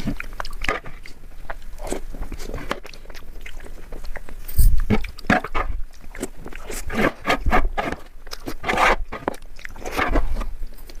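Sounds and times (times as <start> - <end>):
chewing and mouth sounds: 0.0 - 11.0.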